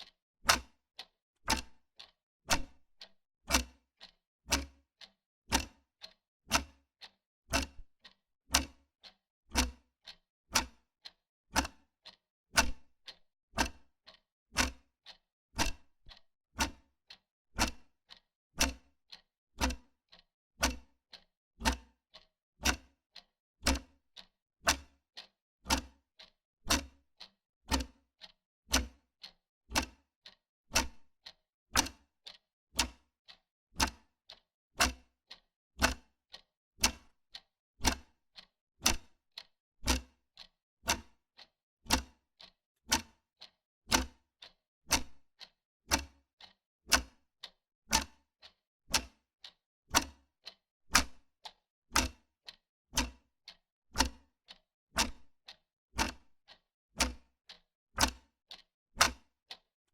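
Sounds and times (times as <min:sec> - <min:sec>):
wall clock ticking: 0:19.6 - 0:22.9, 0:23.6 - 0:33.0, 0:33.8 - 0:41.1, 0:41.9 - 0:47.2, 0:47.9 - 0:52.6, 0:54.0 - 0:55.3, 0:56.0 - 0:57.1.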